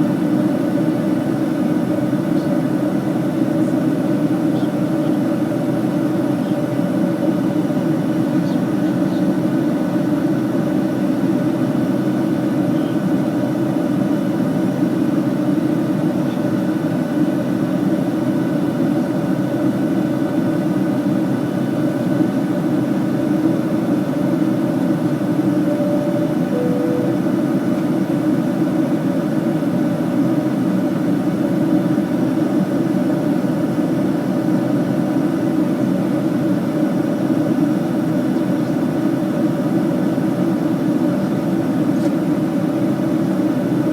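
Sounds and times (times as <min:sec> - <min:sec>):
jet airliner cabin noise: 0:00.0 - 0:20.4, 0:21.5 - 0:33.8
two-note falling chime: 0:25.6 - 0:27.8.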